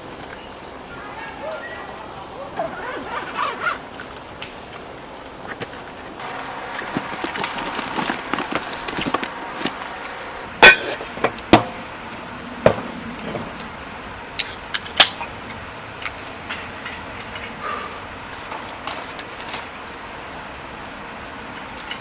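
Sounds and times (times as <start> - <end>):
hard objects knocking and clattering: 10.6 - 11.8.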